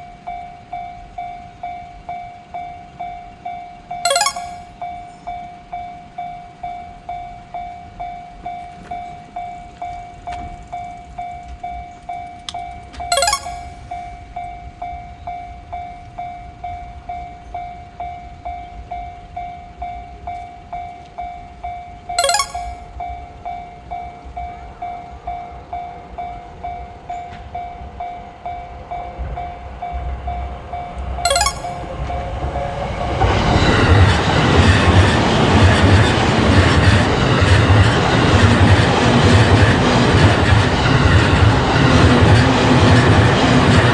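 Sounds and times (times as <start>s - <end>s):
level crossing bell ringing: 4.1s - 4.8s, 13.1s - 14.0s, 22.2s - 22.8s, 31.3s - 32.0s.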